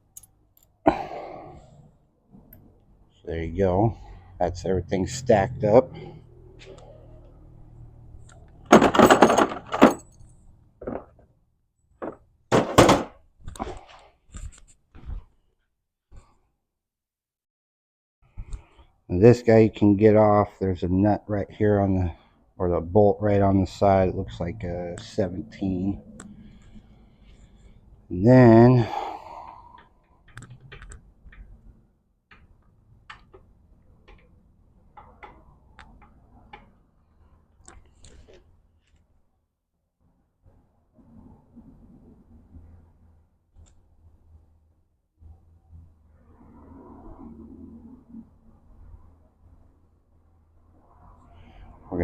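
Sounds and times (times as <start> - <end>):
heavy metal parts clunking: 8.6 - 11.2, 12.0 - 13.2.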